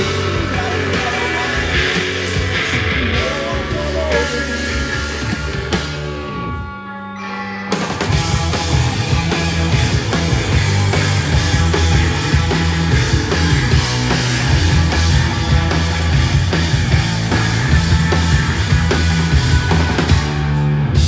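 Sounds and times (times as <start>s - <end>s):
rock band playing: 0.0s - 21.0s.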